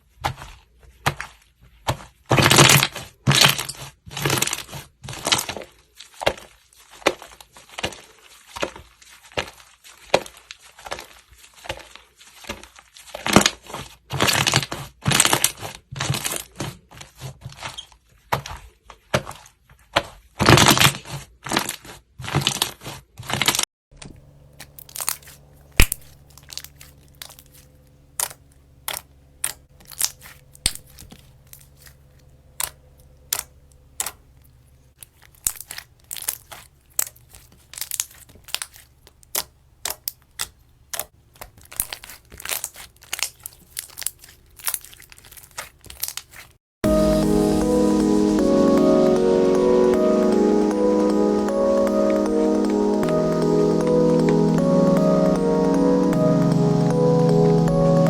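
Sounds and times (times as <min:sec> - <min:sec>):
slime squeezed crackling and popping: 0:35.3 - 0:46.4.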